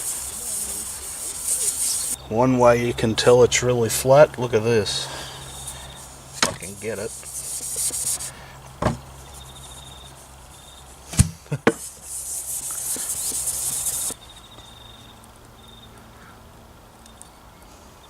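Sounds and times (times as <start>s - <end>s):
stone scraping on glass: 0.0s - 2.2s, 11.7s - 14.2s
faint cricket trills: 4.1s - 11.1s, 12.3s - 18.0s.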